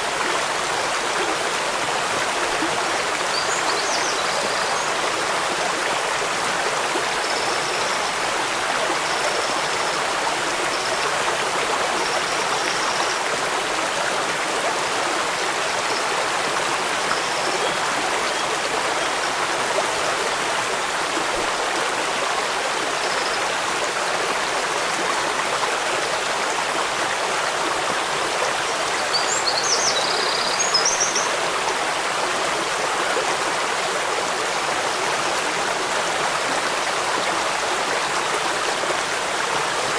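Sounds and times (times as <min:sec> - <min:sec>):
stream and waterfall rushing: 0:00.0 - 0:39.9.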